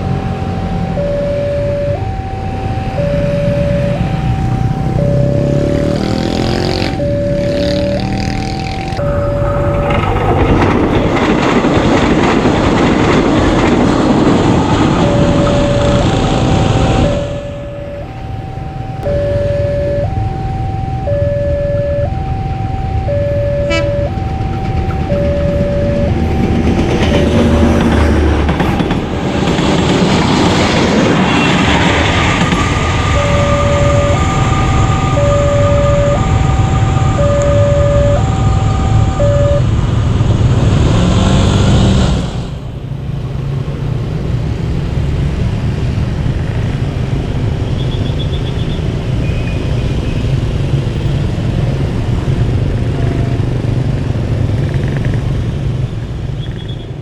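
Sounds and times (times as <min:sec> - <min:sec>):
level crossing warning siren: 0:00.0 - 0:40.0
road traffic noise: 0:00.0 - 0:57.0
train rumbling past: 0:02.9 - 0:20.3, 0:22.0 - 0:45.6.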